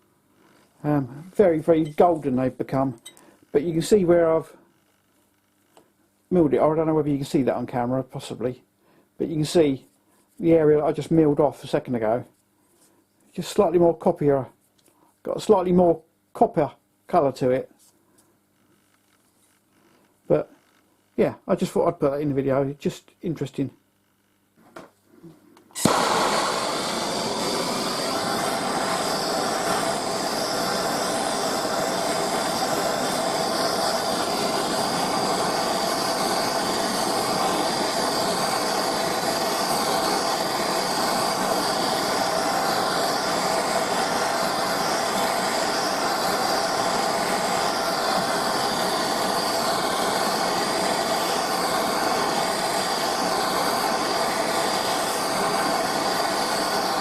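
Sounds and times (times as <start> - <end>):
workshop machine hissing and humming: 25.8 - 57.0.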